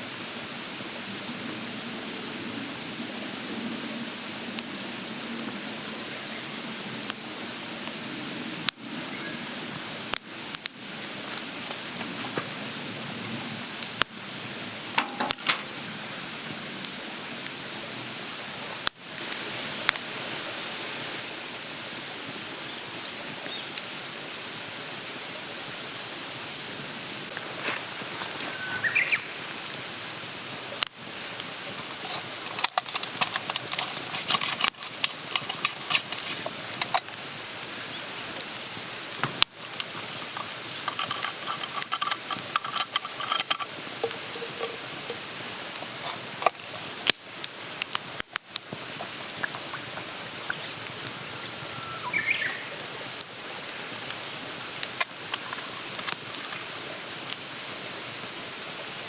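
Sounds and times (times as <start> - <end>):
campfire crackling and hissing: 0.0 - 59.0.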